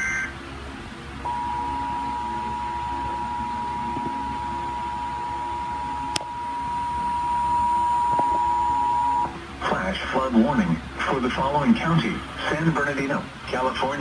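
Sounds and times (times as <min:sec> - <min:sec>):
two-tone alert signal: 0:01.3 - 0:09.3.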